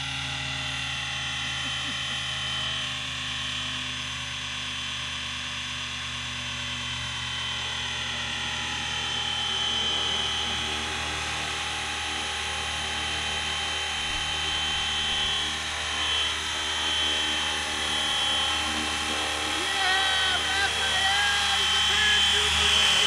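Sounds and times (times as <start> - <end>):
rc helicopter motor whine: 0.0 - 23.0.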